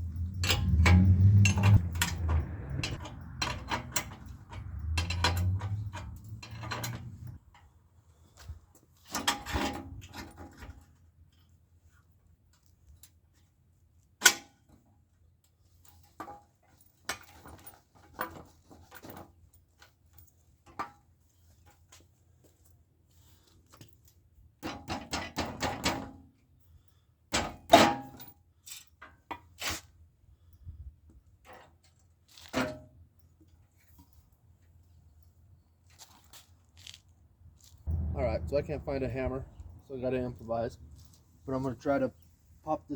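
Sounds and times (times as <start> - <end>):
rattling clicks: 0.0 - 7.4
hand tools and metal parts clanking: 0.0 - 11.0, 15.5 - 30.0, 31.2 - 42.9.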